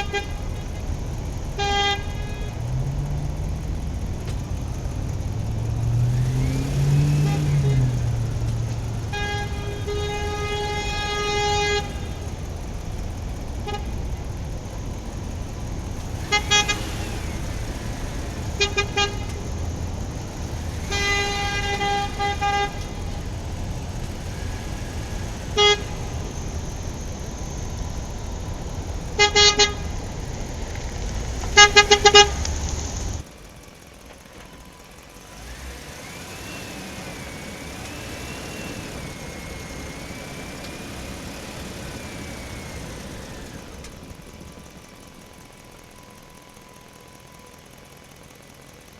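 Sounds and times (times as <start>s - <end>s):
vehicle horn honking: 0.0s - 3.1s, 5.8s - 12.9s, 13.5s - 33.2s
low engine rumble: 0.0s - 48.9s.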